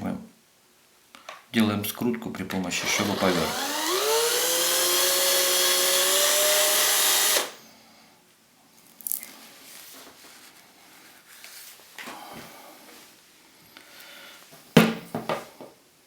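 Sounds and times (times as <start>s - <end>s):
power screwdriver motor whine: 2.8s - 7.6s.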